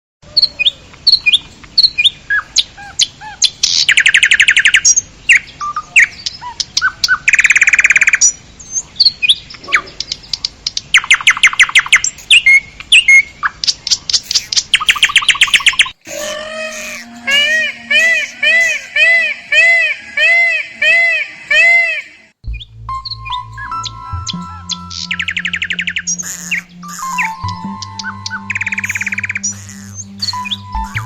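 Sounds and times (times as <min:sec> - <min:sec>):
birds chirping: 0:00.4 - 0:22.4, 0:23.1 - 0:31.0
bird trills: 0:10.9 - 0:31.0.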